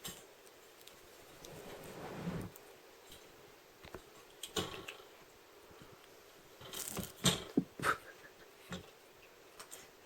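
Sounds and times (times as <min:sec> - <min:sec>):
kittens scuffling: 0:00.0 - 0:05.2.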